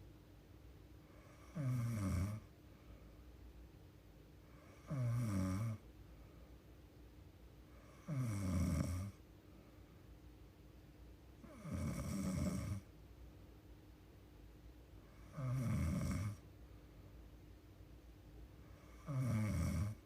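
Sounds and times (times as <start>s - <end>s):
woman snoring: 1.1s - 2.5s, 4.6s - 5.8s, 7.8s - 9.2s, 11.4s - 12.9s, 15.2s - 16.4s, 18.8s - 20.0s.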